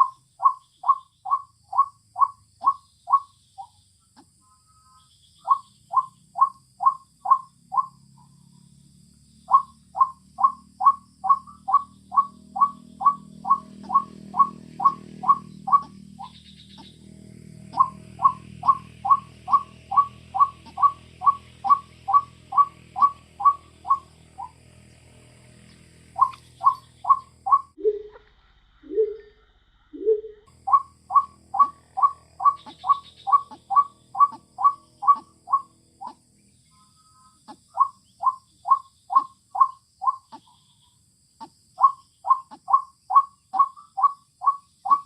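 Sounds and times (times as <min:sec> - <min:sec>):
waterhen calling: 0:09.5 - 0:17.0, 0:17.6 - 0:24.6, 0:26.1 - 0:28.1, 0:30.0 - 0:40.6.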